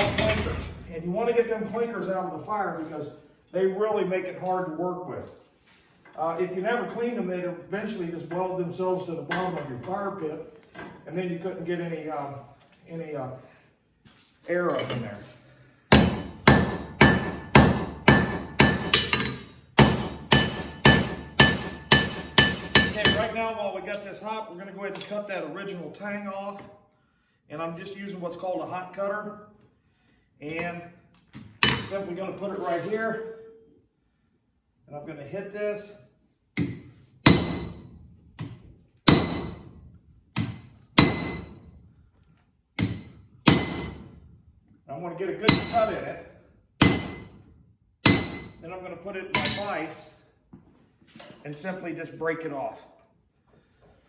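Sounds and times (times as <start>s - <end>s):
hammer ringing on anvil: 0.0s - 0.8s, 15.9s - 23.4s, 39.1s - 39.7s, 41.0s - 41.6s, 43.5s - 44.0s, 45.5s - 45.9s, 46.8s - 47.3s, 48.1s - 48.6s, 49.4s - 49.8s.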